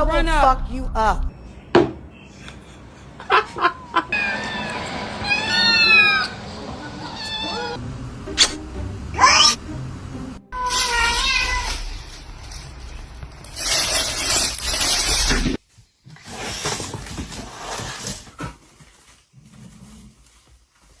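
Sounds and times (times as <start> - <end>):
cat meowing: 4.1 - 6.4, 7.0 - 7.8, 9.2 - 9.6, 10.6 - 12.0.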